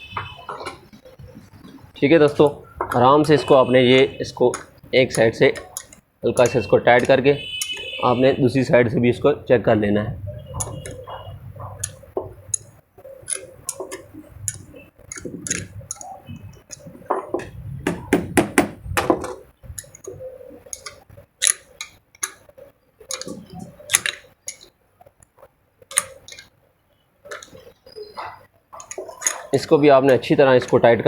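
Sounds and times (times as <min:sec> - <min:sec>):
spanner clicking against metal: 0:04.5 - 0:07.9, 0:19.8 - 0:22.4, 0:23.1 - 0:23.3, 0:23.9 - 0:24.7.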